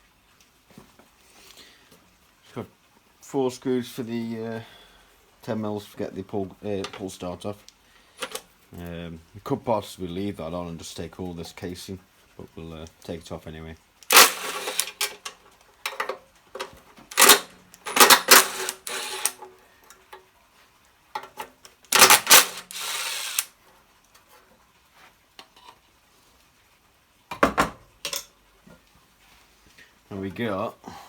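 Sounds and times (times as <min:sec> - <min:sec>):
hand tools clicking on metal: 0:14.0 - 0:19.5, 0:21.2 - 0:23.5.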